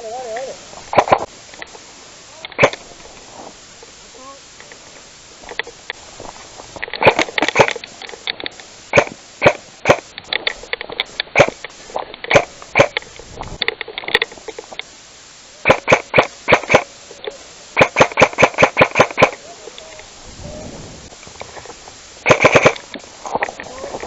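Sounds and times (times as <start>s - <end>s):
airsoft gun shots: 0.9s - 1.3s, 2.6s - 2.8s, 7.0s - 7.8s, 8.9s - 10.1s, 11.3s - 11.6s, 12.3s - 13.0s, 15.6s - 16.9s, 17.8s - 19.4s, 22.2s - 22.9s.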